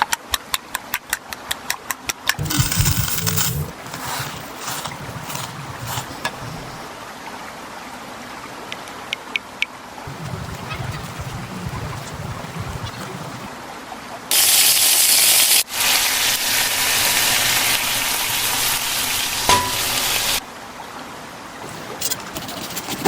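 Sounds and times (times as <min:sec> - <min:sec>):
chicken sizzling in hot fat: 0:14.3 - 0:20.4.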